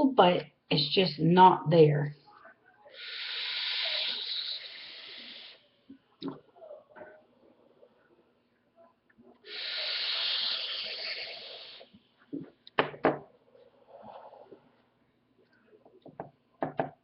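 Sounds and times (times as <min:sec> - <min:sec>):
breathy rush of air: 0:02.9 - 0:05.6, 0:09.5 - 0:11.9.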